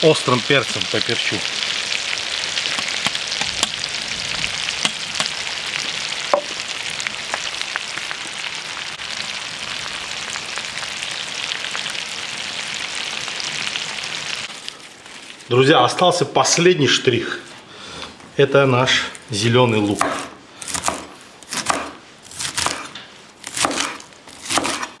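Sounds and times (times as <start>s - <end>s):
potatoes sizzling in fat: 0.0s - 15.7s.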